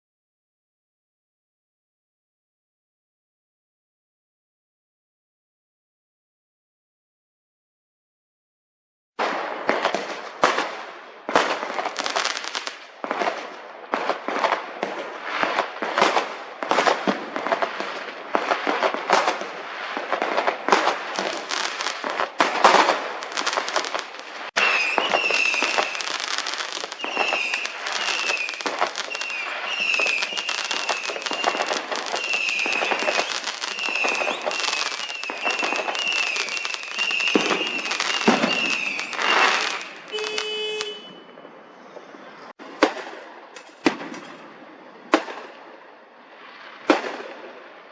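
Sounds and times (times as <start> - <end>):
fireworks bangs and crackles: 9.2 - 47.9
short high whistles: 31.3 - 41.4.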